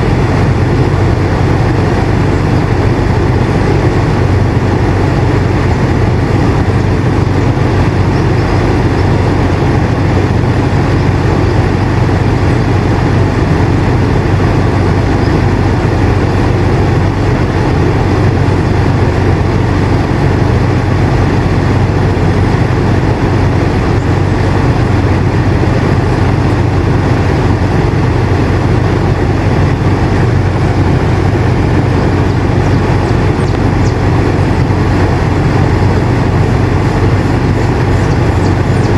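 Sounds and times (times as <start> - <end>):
air conditioner humming: 0.0 - 38.9.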